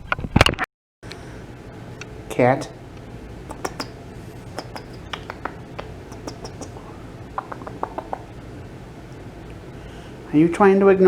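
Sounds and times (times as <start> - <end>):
faint room noise: 1.1 - 11.0
quick ticks: 2.0 - 8.4.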